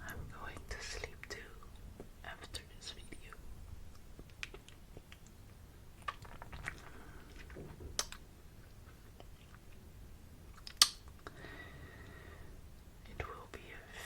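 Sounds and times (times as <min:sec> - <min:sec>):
wet mouth clicks and lip smacks: 0:03.9 - 0:05.4, 0:06.0 - 0:08.2, 0:10.5 - 0:11.4.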